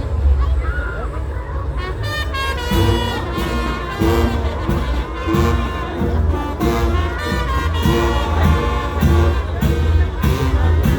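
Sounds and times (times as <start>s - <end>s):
loud music with brass: 1.8s - 10.9s
heavy bass beat: 2.7s - 10.9s.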